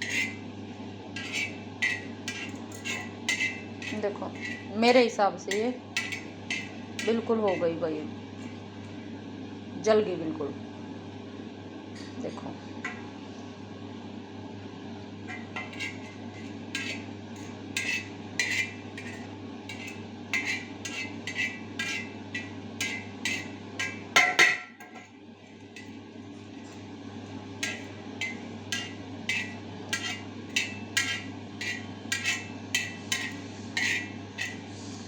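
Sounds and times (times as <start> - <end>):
utensil scraping a griddle: 0.0 - 0.4, 1.1 - 7.8, 15.3 - 26.0, 27.6 - 35.0.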